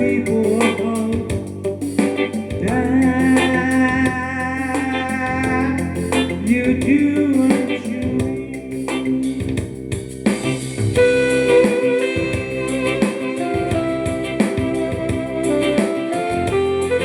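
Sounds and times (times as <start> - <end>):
guitar accompaniment: 0.0 - 17.0
low bass: 0.0 - 17.0.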